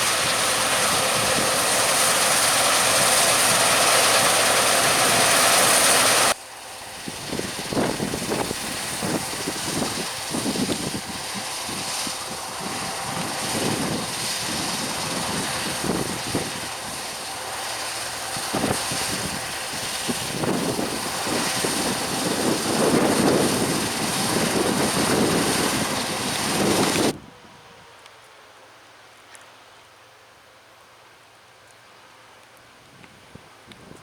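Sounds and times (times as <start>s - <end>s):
harvest machine engine drone: 0.0s - 27.2s.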